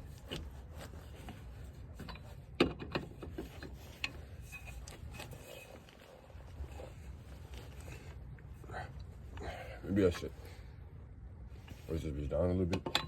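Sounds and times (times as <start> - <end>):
low steady rumble: 0.0 - 12.9
hardware clicks and knocks: 2.0 - 4.9, 12.6 - 13.0.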